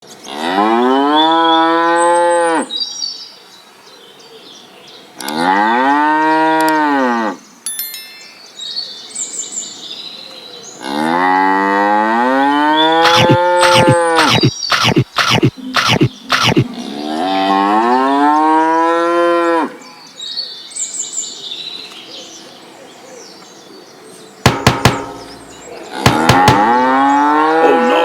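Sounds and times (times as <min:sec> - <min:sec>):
birds chirping faintly: 0:01.0 - 0:11.4, 0:12.4 - 0:28.0
sharp knocks: 0:13.1 - 0:16.7, 0:24.5 - 0:27.0
cow mooing: 0:16.7 - 0:19.8, 0:25.4 - 0:28.0.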